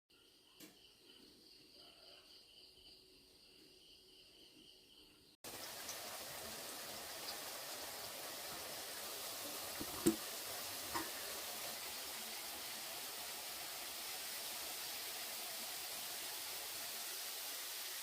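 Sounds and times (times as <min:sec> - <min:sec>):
steady hiss: 0:05.5 - 0:18.0.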